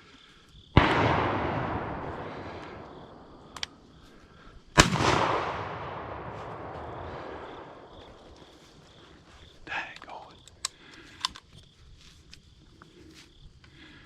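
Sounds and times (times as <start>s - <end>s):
shotgun shots with echo: 0.8s - 3.6s, 4.8s - 8.0s.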